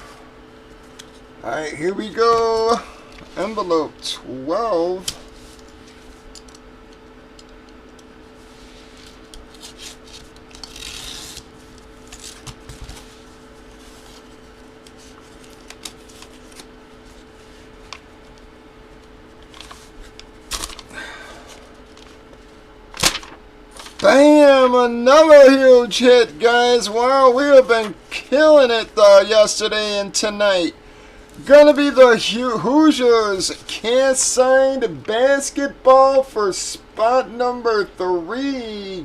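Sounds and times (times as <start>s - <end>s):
low hum: 0.0s - 25.1s
paper rustling: 8.5s - 18.0s, 19.4s - 20.9s, 21.5s - 24.2s.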